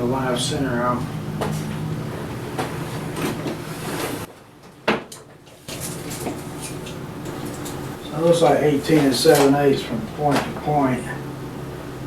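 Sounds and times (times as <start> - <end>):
tools and metal parts scraping: 5.7 - 7.9
steady hum: 5.8 - 12.0.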